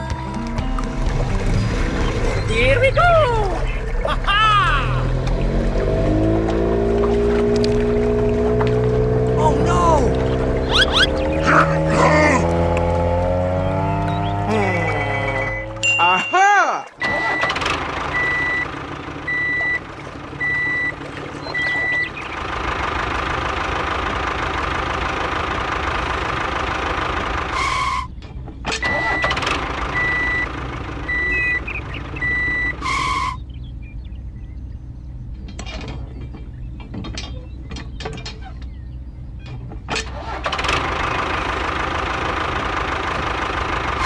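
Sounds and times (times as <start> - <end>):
heavy truck engine running: 0.0 - 15.9, 17.0 - 44.0
reversing alarm beeping: 17.0 - 19.8, 20.4 - 22.2, 29.1 - 33.4.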